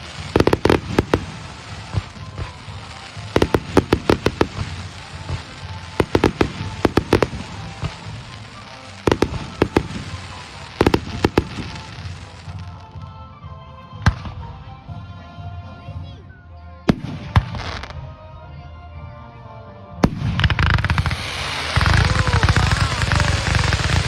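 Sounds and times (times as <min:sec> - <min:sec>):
fireworks exploding: 0:00.0 - 0:13.1, 0:16.9 - 0:18.1, 0:20.0 - 0:24.0.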